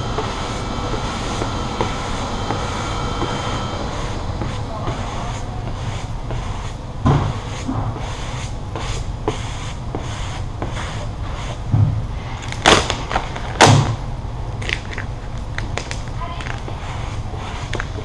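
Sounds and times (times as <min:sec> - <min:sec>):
steady low hum: 0:00.0 - 0:18.0
squeegee scraping vinyl film: 0:14.6 - 0:18.0.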